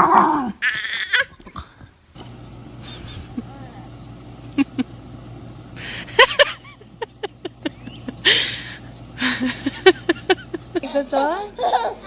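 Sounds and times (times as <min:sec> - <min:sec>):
baby squealing: 0:00.6 - 0:01.3, 0:11.0 - 0:12.0.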